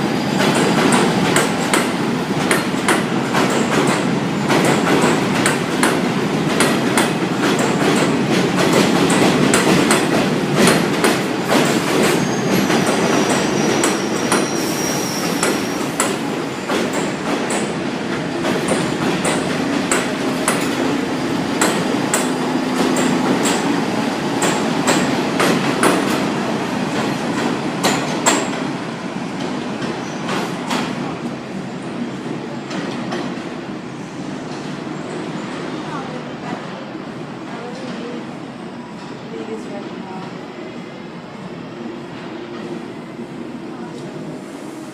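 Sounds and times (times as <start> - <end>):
train wheels clacking over rail joints: 0.4 - 14.6, 15.2 - 21.0, 21.6 - 23.8, 24.4 - 26.3, 27.0 - 28.6.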